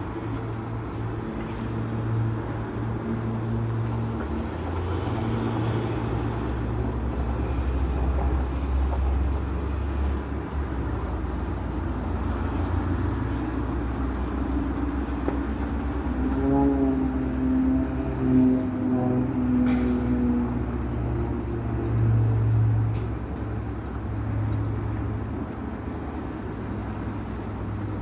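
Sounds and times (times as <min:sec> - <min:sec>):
propeller airplane engine droning: 0:00.0 - 0:28.0
higher engine tone: 0:13.3 - 0:24.8.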